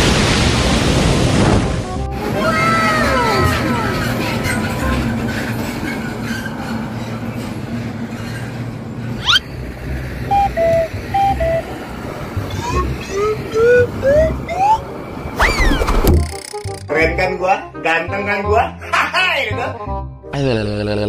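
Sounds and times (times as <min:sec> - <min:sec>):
vehicle engine humming: 0:07.2 - 0:15.4
quick rising whistle: 0:09.2 - 0:09.4, 0:15.4 - 0:16.1
musical bus horn notes: 0:10.2 - 0:12.9.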